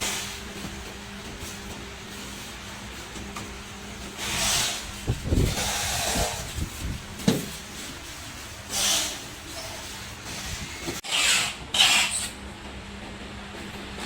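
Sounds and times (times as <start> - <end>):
rasping hissing bursts: 4.2 - 7.0, 8.6 - 12.2.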